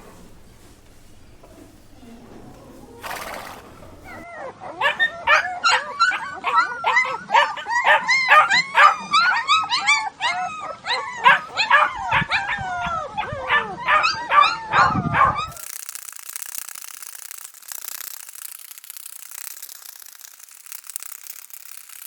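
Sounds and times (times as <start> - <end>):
dogs yipping and whimpering: 4.0 - 15.5.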